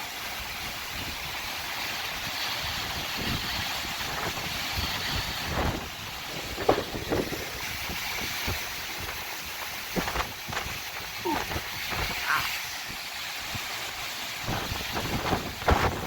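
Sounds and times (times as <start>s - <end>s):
gusty wind buffeting microphone: 2.6s - 16.0s.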